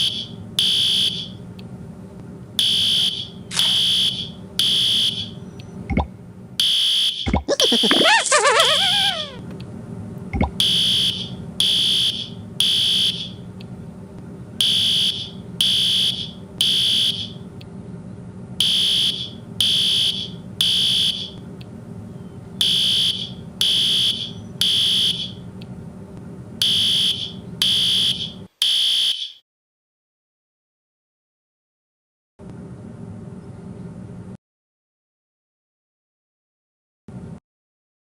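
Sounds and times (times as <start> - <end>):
fire alarm beeping: 0.0 - 1.4, 2.6 - 5.4, 6.6 - 7.9, 10.6 - 13.4, 14.6 - 17.4, 18.6 - 21.4, 22.6 - 25.4, 26.6 - 29.4.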